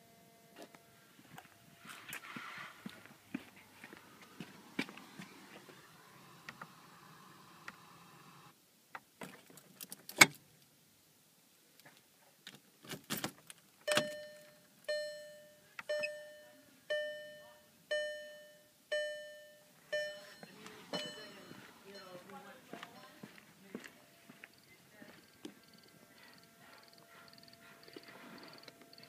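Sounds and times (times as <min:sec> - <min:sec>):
car warning chime: 0:13.9 - 0:23.2, 0:24.0 - 0:29.0
faint hum: 0:14.0 - 0:29.0.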